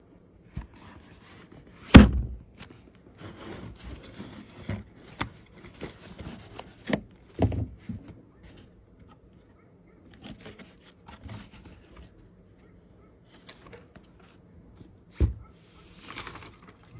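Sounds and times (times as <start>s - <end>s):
cardboard and plastic rustling: 0.5s - 9.4s, 10.0s - 16.9s
sharp thud: 1.9s - 2.4s.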